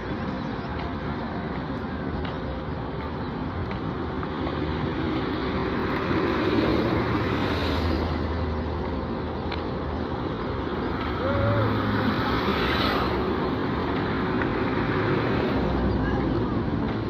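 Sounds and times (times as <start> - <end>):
road traffic rumble: 0.0 - 17.0
vehicle passing by: 4.2 - 9.3, 10.2 - 16.0.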